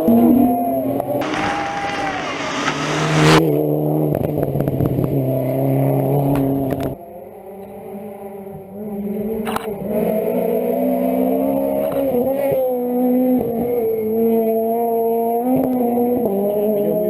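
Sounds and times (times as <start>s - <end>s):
rally car engine revving: 0.0s - 17.0s
sharp knock: 1.2s - 3.4s.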